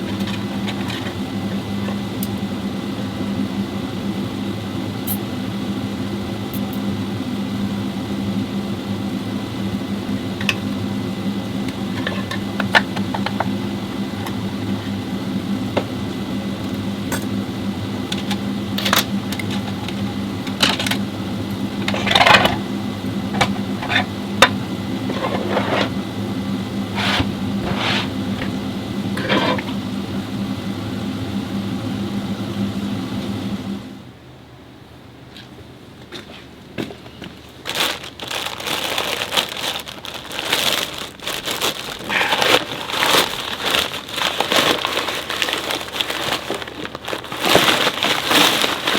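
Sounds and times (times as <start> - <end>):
machine hum: 0.0 - 36.0, 37.0 - 48.9.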